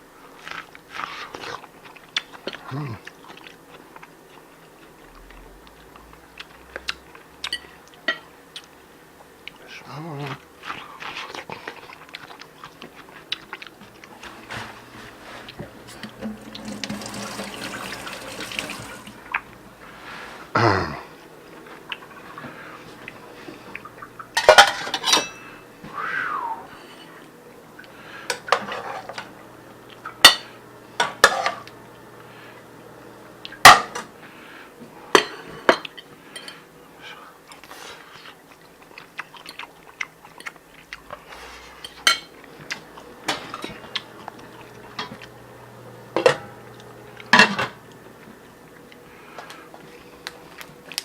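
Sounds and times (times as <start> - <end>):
cutlery clinking against dishes: 7.4 - 8.3, 24.4 - 25.6, 35.1 - 36.7, 41.8 - 42.4.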